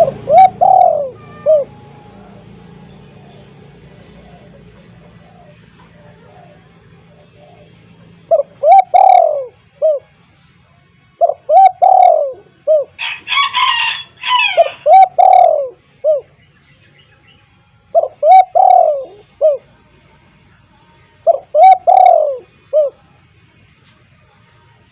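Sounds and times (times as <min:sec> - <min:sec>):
higher chirping: 0:00.0 - 0:10.1
dove cooing: 0:00.0 - 0:10.2, 0:11.2 - 0:16.4, 0:17.9 - 0:19.7, 0:21.2 - 0:23.0.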